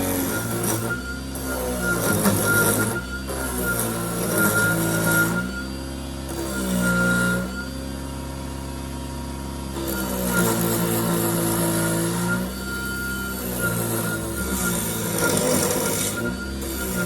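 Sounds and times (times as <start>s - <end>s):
turning tool cutting wood: 0.0s - 5.6s, 6.2s - 7.6s, 9.6s - 17.0s
wood lathe motor whining: 0.0s - 17.0s.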